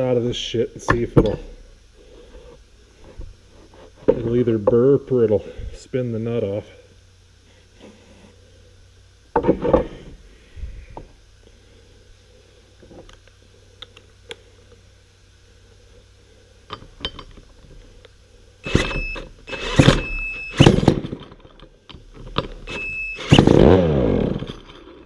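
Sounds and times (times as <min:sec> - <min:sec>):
chainsaw engine firing: 0:18.7 - 0:21.2, 0:22.7 - 0:25.0
chainsaw starter cord pulled: 0:18.7 - 0:21.3, 0:22.4 - 0:25.0
high squeal: 0:22.7 - 0:23.5.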